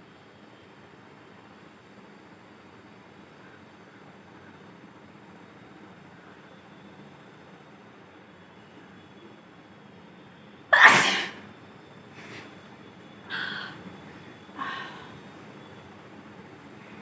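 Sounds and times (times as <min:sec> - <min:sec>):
woman sneezing: 0:10.8 - 0:11.4.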